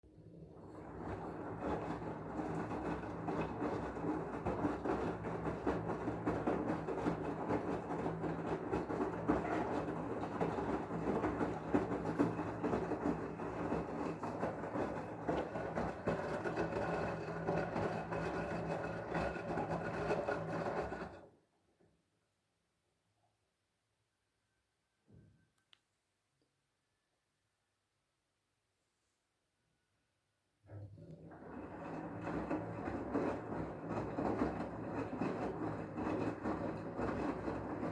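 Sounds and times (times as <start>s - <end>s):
washing machine churning: 0.1s - 21.3s, 30.7s - 37.9s.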